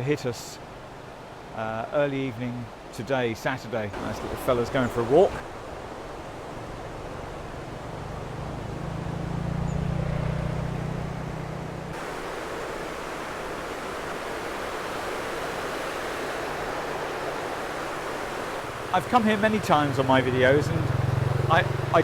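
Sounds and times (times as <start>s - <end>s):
river water rushing through weir: 3.8s - 8.8s, 11.9s - 22.0s.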